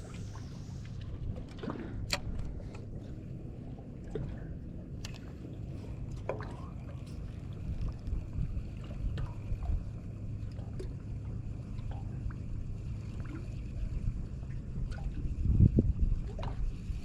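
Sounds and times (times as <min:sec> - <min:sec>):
water and wind rumble: 0:00.0 - 0:17.0.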